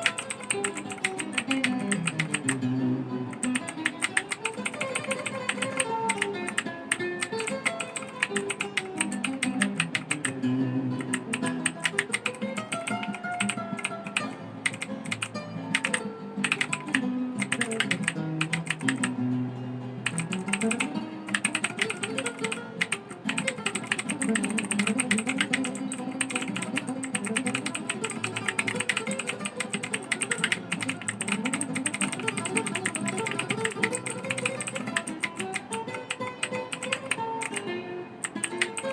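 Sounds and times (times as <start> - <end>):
mechanical keyboard typing: 0.0 - 2.6, 3.3 - 10.4, 11.0 - 19.2, 20.0 - 38.9
guitar music: 0.0 - 38.9.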